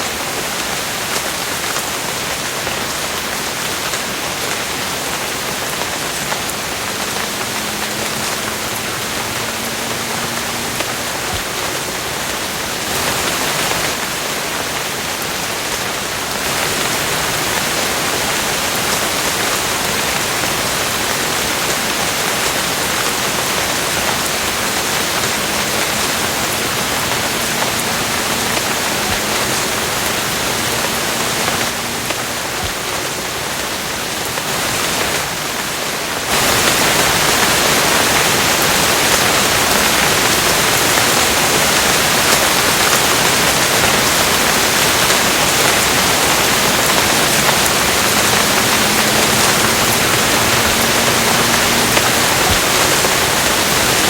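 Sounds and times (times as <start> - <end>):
heavy rain: 0.0 - 54.0.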